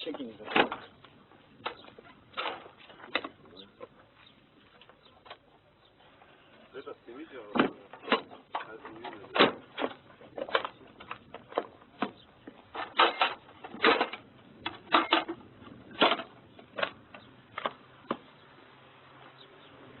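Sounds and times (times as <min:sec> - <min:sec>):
sharp clicks and knocks: 0:00.4 - 0:03.9, 0:07.5 - 0:18.3.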